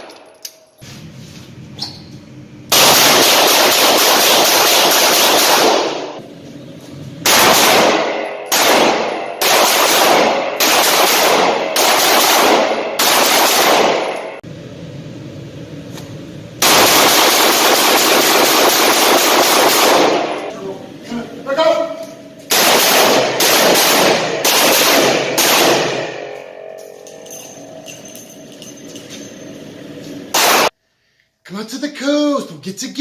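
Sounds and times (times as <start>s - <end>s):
rapid gunfire: 2.7s - 6.2s, 7.2s - 14.2s, 16.6s - 20.5s, 22.5s - 26.2s, 30.3s - 30.7s.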